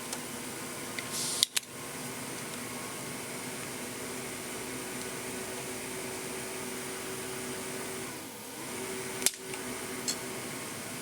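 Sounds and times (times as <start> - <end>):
fan-like hum: 0.0 - 11.0
sharp click: 1.1 - 1.7.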